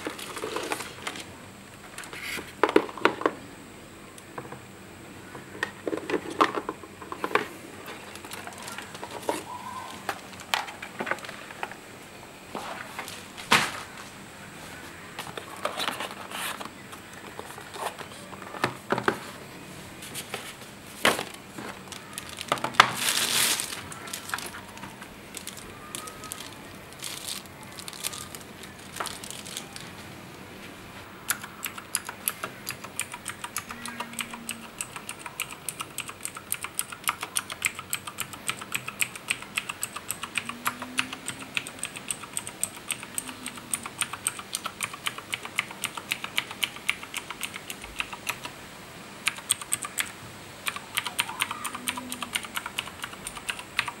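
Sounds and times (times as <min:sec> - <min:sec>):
packaging crinkling: 0:21.0 - 0:30.0
typing on mechanical keyboard: 0:31.3 - 0:48.5, 0:49.2 - 0:54.0.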